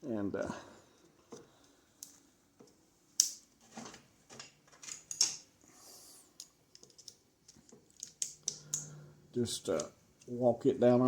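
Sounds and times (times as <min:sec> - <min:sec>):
metal parts clicking and knocking: 0:02.0 - 0:05.5, 0:06.4 - 0:09.0.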